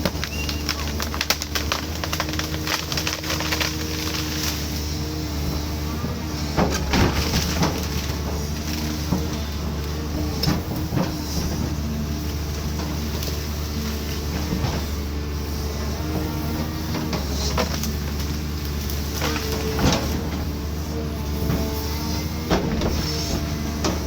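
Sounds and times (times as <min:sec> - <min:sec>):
sharp knocks and cracks: 0:00.0 - 0:04.6
excavator diesel engine running: 0:00.0 - 0:24.0.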